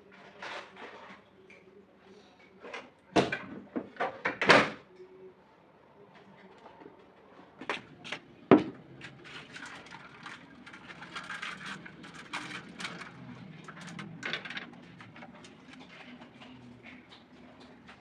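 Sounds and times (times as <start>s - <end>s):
light clicks and rustling clatter: 6.1s - 18.0s.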